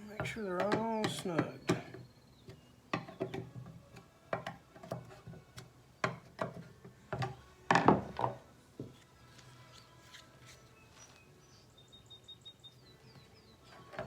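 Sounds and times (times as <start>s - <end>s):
tools clicking and knocking: 0.2s - 8.4s.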